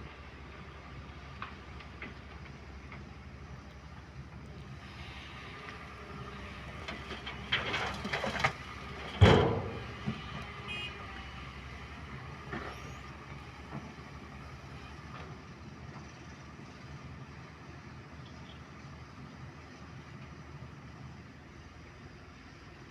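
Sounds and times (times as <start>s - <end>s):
excavator diesel engine: 0.0s - 22.9s
rattle of clanks: 7.1s - 10.2s
heavy thump: 9.2s - 10.2s.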